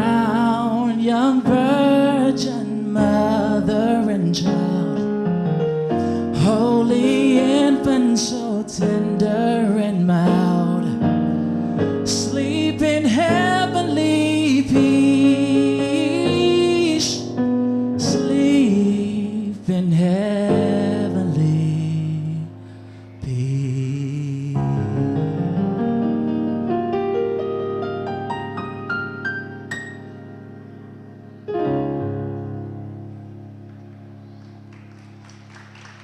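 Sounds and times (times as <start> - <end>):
piano and keyboard accompaniment: 0.0 - 36.0.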